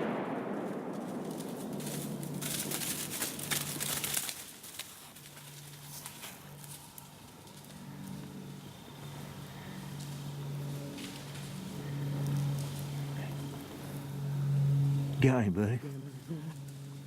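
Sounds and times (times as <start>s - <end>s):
rifle shot echo: 0.0s - 4.0s
rustling and crackling clicks: 0.0s - 15.2s.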